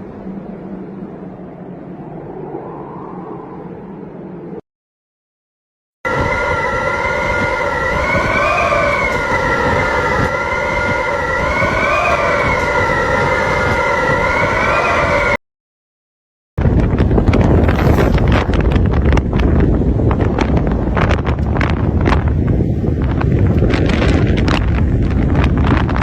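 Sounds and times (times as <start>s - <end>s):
howling wind: 0.0s - 4.6s, 6.0s - 15.4s, 16.6s - 26.0s
rough gust of wind: 0.0s - 4.6s, 16.6s - 26.0s.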